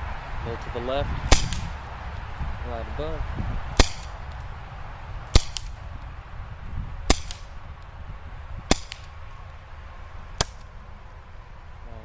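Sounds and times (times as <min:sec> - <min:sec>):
gas revolver shots popping: 0:01.3 - 0:01.8, 0:03.8 - 0:04.2, 0:05.3 - 0:05.8, 0:07.1 - 0:07.6, 0:08.7 - 0:09.2, 0:10.4 - 0:10.7.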